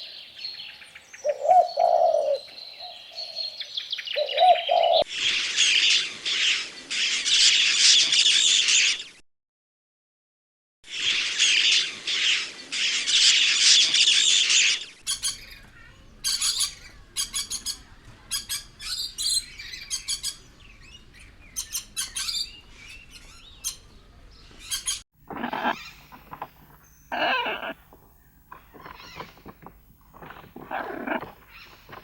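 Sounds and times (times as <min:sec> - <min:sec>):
pet birds squawking and chirping: 0:11.0 - 0:32.0.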